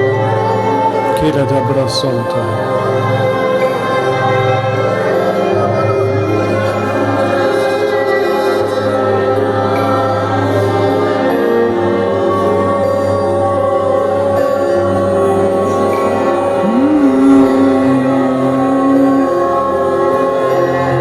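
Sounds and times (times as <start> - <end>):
choir-like voices: 0.0 - 21.0
slow worship music chords: 0.0 - 21.0
low sustained drone: 11.6 - 21.0.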